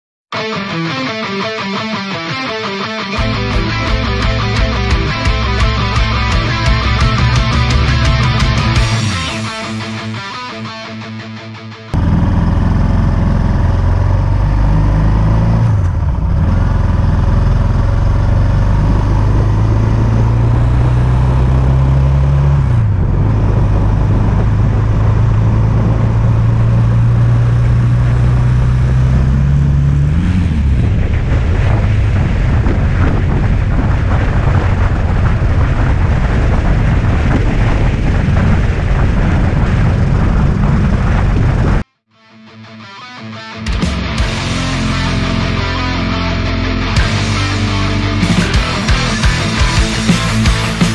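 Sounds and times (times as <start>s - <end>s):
motorcycle engine accelerating: 3.2s - 10.3s, 11.9s - 41.9s, 43.7s - 50.9s
wind rush on microphone: 18.2s - 41.9s.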